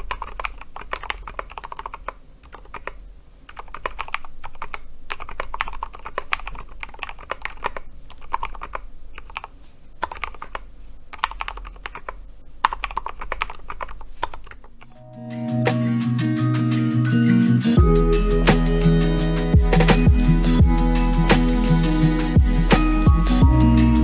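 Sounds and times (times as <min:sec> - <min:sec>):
mechanical keyboard typing: 0:00.0 - 0:14.9.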